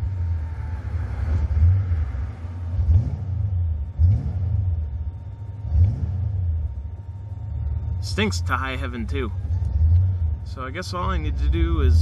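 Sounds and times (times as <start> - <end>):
car engine revving roughly: 0.0 - 4.9, 5.6 - 6.8.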